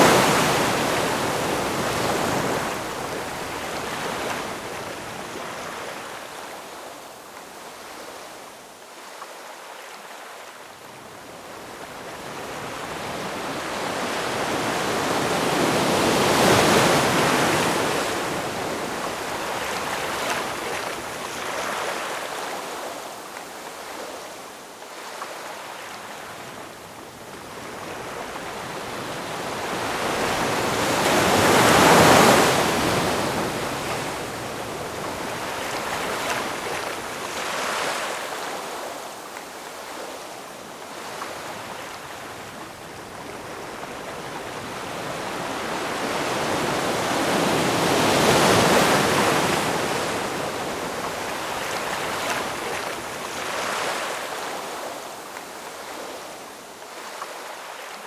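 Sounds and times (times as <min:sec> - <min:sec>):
ocean waves breaking: 0:00.0 - 0:06.2, 0:27.5 - 0:40.3, 0:40.9 - 0:58.0.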